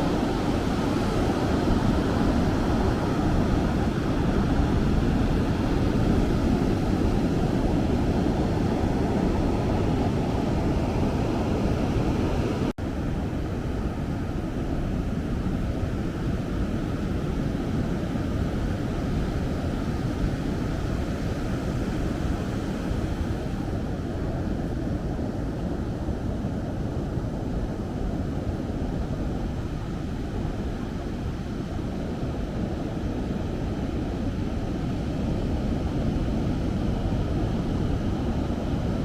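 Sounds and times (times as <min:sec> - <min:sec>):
ocean surf: 0:00.0 - 0:12.7
wind on microphone: 0:00.0 - 0:39.0.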